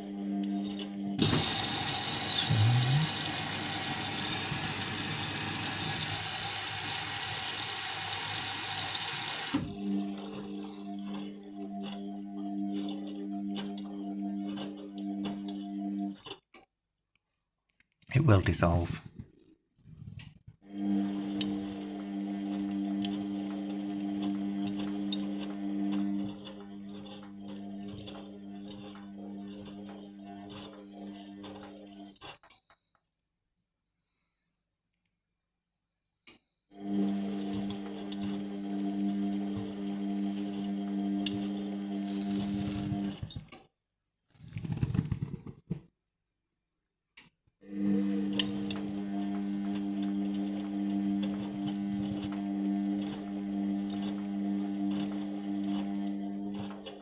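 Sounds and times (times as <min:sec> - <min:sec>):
water filling washing machine: 0:00.0 - 0:16.2, 0:20.7 - 0:32.1, 0:36.8 - 0:43.4, 0:47.8 - 0:57.0.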